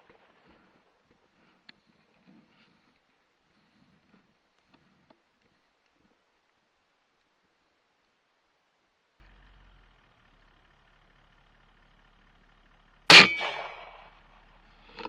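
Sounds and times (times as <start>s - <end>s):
faint hiss: 0.0s - 12.6s
rifle shot with metallic ringing: 13.1s - 14.2s.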